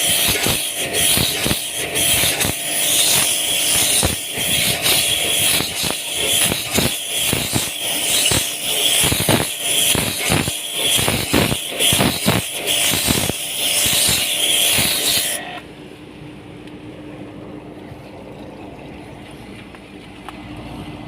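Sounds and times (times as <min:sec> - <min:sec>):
water jet hissing: 0:00.0 - 0:15.6
pressure washer motor hum: 0:00.0 - 0:21.0.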